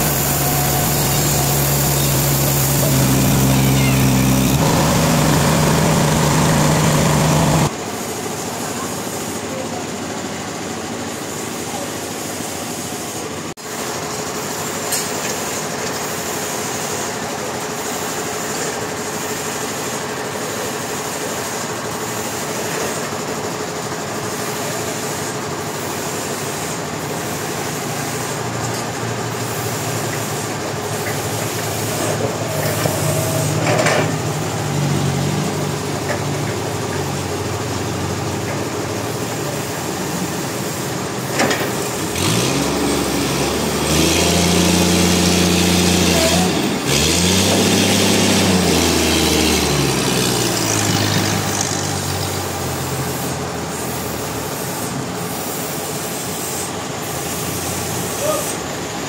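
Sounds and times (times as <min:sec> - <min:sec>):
engine revving: 0:00.0 - 0:07.7, 0:42.0 - 0:53.0
sawmill machinery whining: 0:00.0 - 0:08.0, 0:26.7 - 0:53.6.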